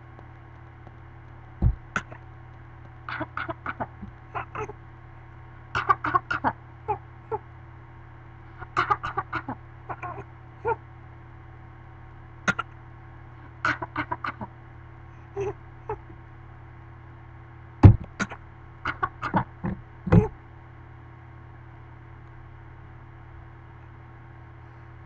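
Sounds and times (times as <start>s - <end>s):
baby fake coughing: 1.6s - 2.2s, 3.7s - 4.7s, 12.5s - 12.7s.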